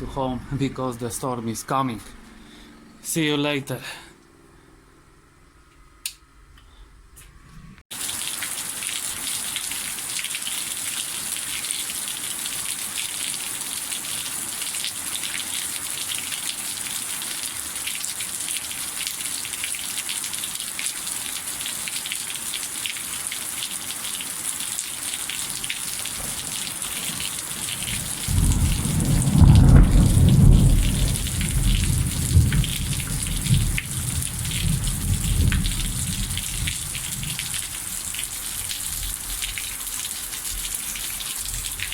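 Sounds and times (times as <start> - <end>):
heavy rain: 7.9 - 41.9
thunder rumbling: 26.0 - 37.7.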